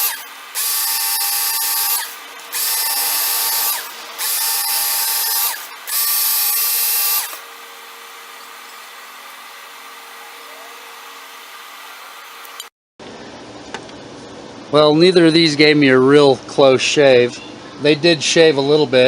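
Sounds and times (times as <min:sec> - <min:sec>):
sharpener belt motor running: 0:00.0 - 0:12.7.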